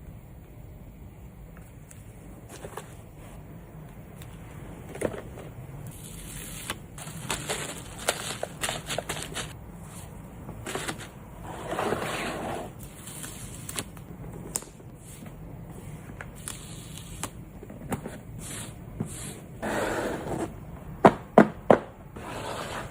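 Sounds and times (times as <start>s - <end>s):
plastic wrapping crinkling: 5.9s - 9.6s.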